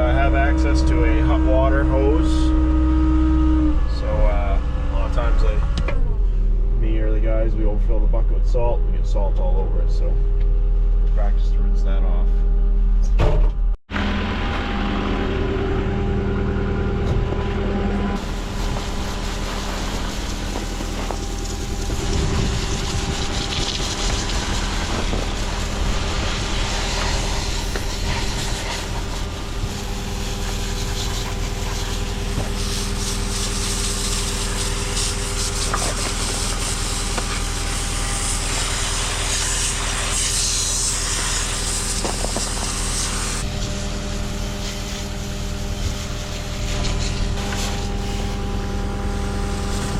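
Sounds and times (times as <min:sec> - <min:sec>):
truck engine idling hum: 0:14.0 - 0:38.6
hose spraying and hissing: 0:18.2 - 0:48.7.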